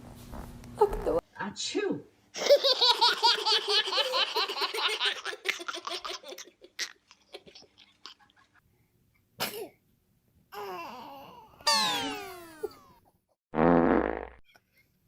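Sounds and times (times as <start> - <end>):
person sneezing: 9.4 - 9.7
high-pitched laughter: 11.7 - 12.8.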